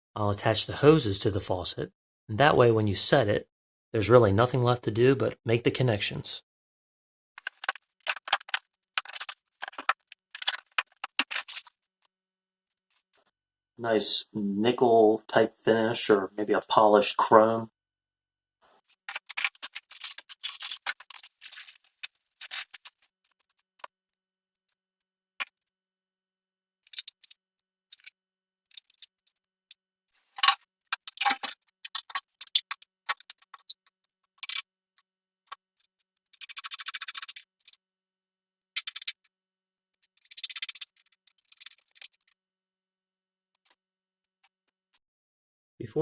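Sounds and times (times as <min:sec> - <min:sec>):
rustling scrapes: 0:18.7 - 0:23.0.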